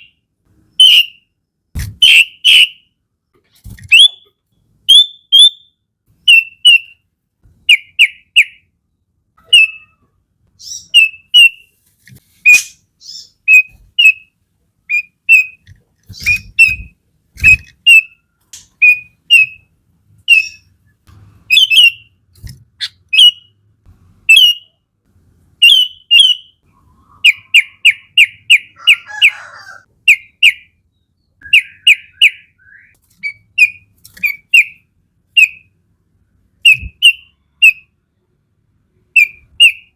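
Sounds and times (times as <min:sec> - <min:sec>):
bird calling in whistled notes: 0:00.8 - 0:01.3, 0:02.0 - 0:02.8, 0:04.9 - 0:07.0, 0:21.5 - 0:22.1, 0:23.1 - 0:23.5, 0:25.6 - 0:29.4, 0:31.4 - 0:34.8
harsh bird rasp: 0:15.0 - 0:18.2, 0:25.6 - 0:29.9.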